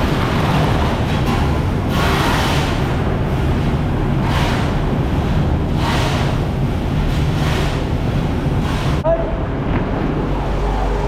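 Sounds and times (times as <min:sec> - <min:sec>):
low engine drone: 0:00.0 - 0:11.0.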